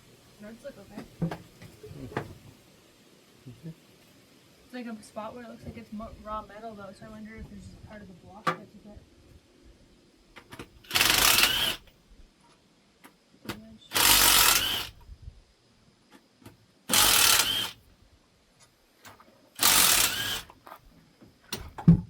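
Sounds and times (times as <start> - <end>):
impact wrench bursts: 10.6 - 11.9, 13.9 - 15.0, 16.9 - 17.8, 19.6 - 20.8.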